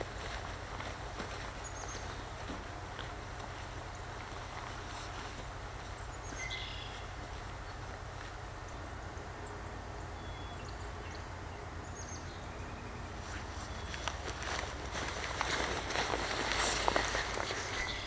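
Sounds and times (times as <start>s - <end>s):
crunching footsteps: 0.0s - 8.7s, 13.2s - 18.0s
high bird calls: 5.9s - 7.8s, 11.9s - 18.0s.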